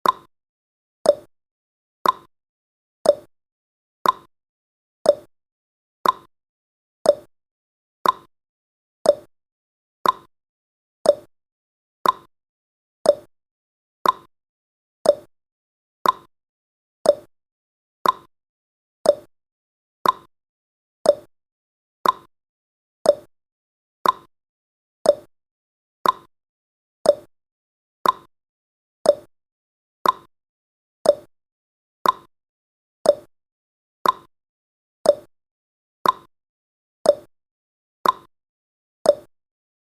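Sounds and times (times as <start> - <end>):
clock ticking: 2.0 - 2.3, 4.0 - 4.3, 6.0 - 6.3, 8.0 - 8.3, 10.0 - 10.3, 12.0 - 12.3, 14.0 - 14.3, 15.1 - 15.3, 16.0 - 16.3, 18.0 - 18.3, 19.1 - 19.3, 20.0 - 20.3, 21.1 - 21.3, 22.0 - 22.3, 24.0 - 24.3, 26.0 - 26.3, 28.0 - 28.3, 29.1 - 29.3, 30.0 - 30.3, 31.1 - 31.3, 32.0 - 32.3, 33.1 - 33.3, 34.0 - 34.3, 35.1 - 35.3, 36.0 - 36.3, 38.0 - 38.3, 39.1 - 39.3.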